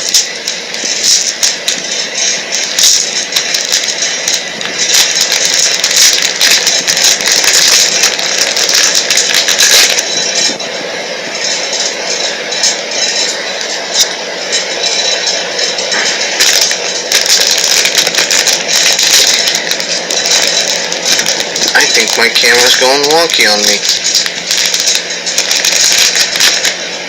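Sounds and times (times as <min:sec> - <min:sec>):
packaging crinkling and crackling: 0:00.0 - 0:10.6, 0:11.4 - 0:27.0.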